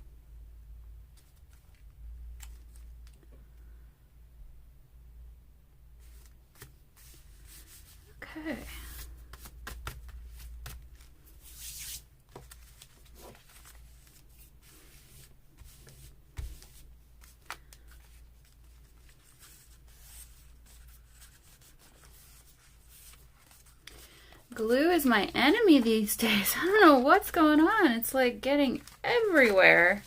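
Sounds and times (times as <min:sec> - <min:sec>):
paper rustling and crinkling: 0:01.2 - 0:03.2, 0:08.8 - 0:24.1, 0:28.6 - 0:30.0.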